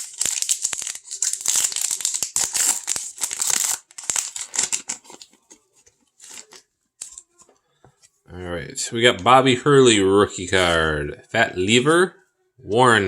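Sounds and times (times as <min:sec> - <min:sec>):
foil wrapper crinkling and tearing: 0:00.0 - 0:05.6, 0:06.2 - 0:07.2.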